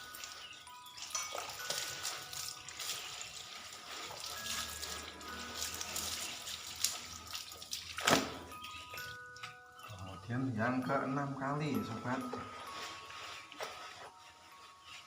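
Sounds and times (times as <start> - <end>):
water splashing in a basin: 0.0 - 9.2.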